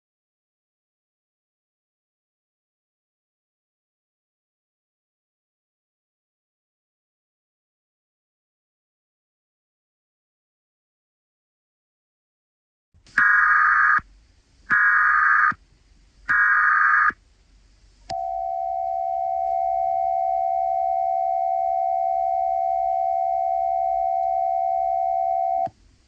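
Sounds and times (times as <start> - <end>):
buzzing data bursts: 13.2 - 14.0, 14.7 - 15.6, 16.3 - 17.2
long steady alert tone: 18.1 - 25.7.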